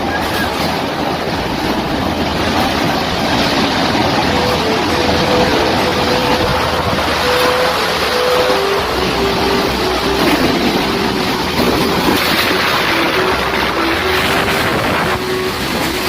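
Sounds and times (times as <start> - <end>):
strong wind rushing: 0.0 - 16.0
faint wavering whistle: 4.2 - 16.0.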